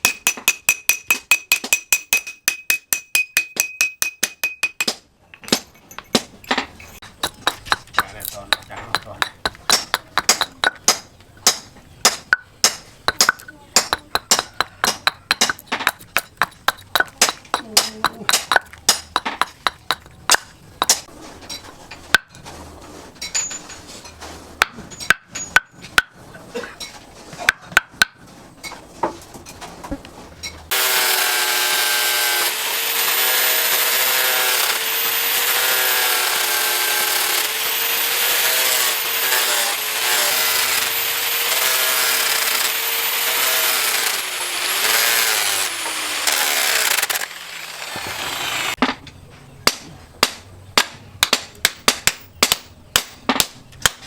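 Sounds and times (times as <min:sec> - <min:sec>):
power tool whining: 0:30.7 - 0:48.8.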